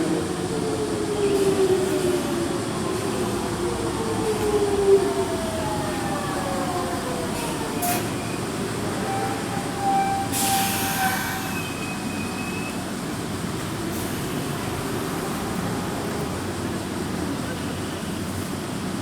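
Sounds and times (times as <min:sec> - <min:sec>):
electric train rumbling: 0:00.0 - 0:19.0
short rush of hiss: 0:10.3 - 0:11.8.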